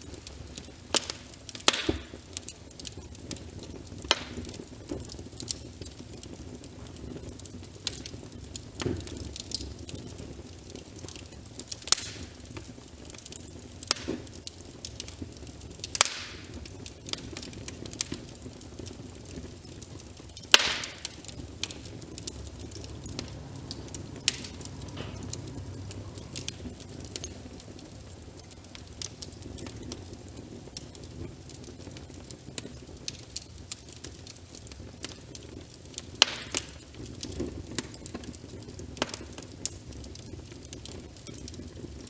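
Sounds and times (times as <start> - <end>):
wood fire crackling and popping: 0.0 - 42.0
rain hissing: 19.0 - 31.5.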